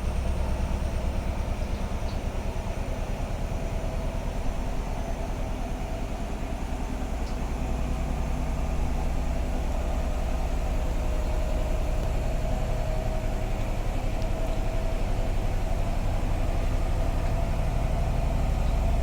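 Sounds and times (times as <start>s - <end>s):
washing machine spinning: 0.0s - 19.0s.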